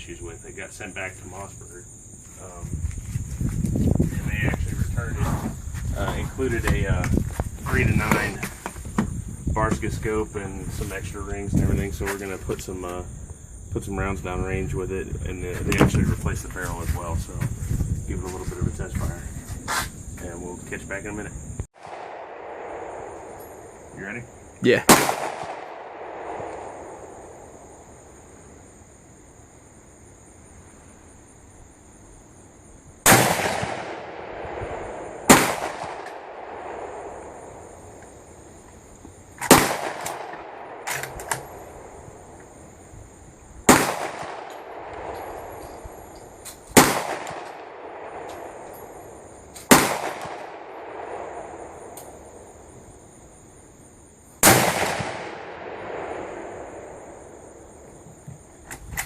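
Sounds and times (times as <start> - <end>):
rifle shots with echo: 21.8 - 23.8, 24.9 - 27.7, 33.0 - 37.7, 39.4 - 42.0, 43.6 - 45.6, 46.7 - 48.9, 49.6 - 52.0, 54.4 - 57.3
faint sharp cracks: 35.3 - 37.4, 38.0 - 41.7.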